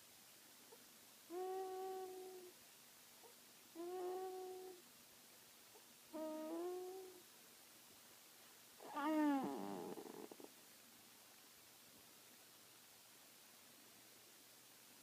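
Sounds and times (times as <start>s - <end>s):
baby snoring with hooting tone: 1.3s - 2.5s, 3.8s - 4.8s, 6.1s - 7.2s, 8.8s - 10.5s.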